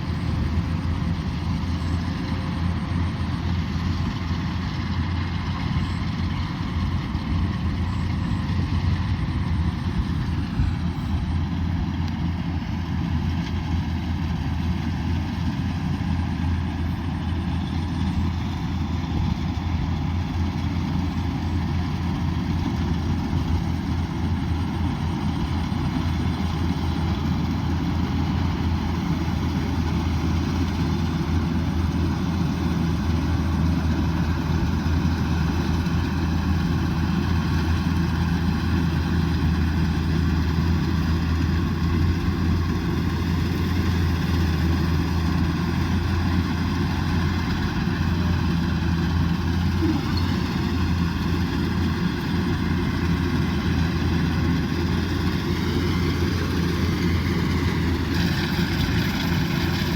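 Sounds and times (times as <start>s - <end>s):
combine harvester engine droning: 0.0s - 59.9s.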